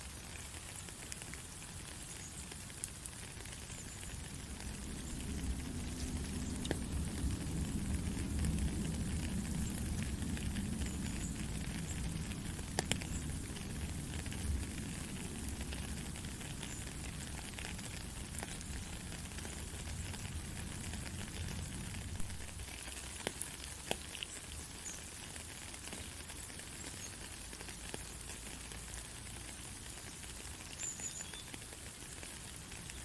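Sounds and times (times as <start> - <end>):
heavy rain hiss: 0.0 - 33.0
low rumble: 4.2 - 16.2
sharp drip clicks: 5.0 - 7.2, 8.4 - 13.6.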